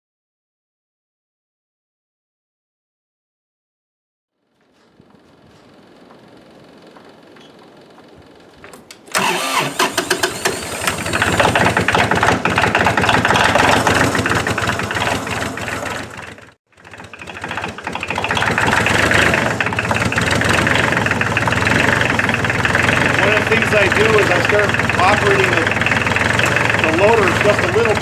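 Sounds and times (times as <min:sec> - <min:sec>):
diesel tractor engine cranking: 0:08.8 - 0:28.0
diesel engine running steadily: 0:09.0 - 0:28.0.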